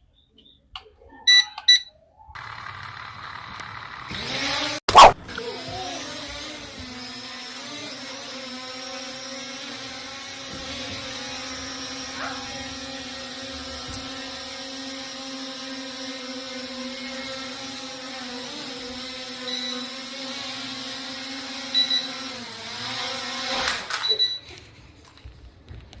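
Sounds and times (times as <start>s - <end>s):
drone propellers whining: 2.4s - 24.0s
sharp click: 4.9s - 5.4s.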